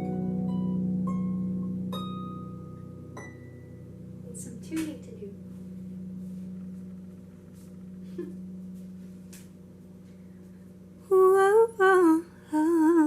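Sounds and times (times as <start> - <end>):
loud wavering hums: 0.0 - 13.0.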